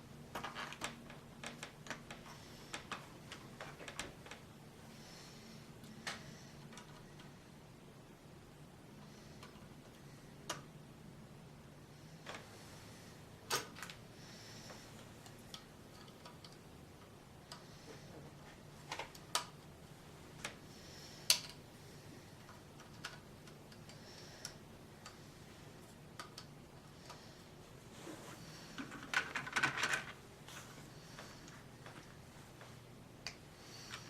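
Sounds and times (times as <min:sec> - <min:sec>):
soft rustles: 0:27.1 - 0:29.4, 0:30.0 - 0:33.0.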